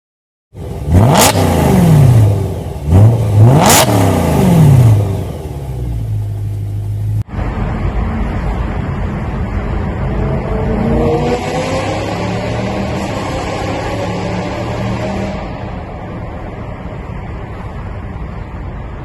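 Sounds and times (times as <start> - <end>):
car engine revving and idling: 0.6 - 19.0.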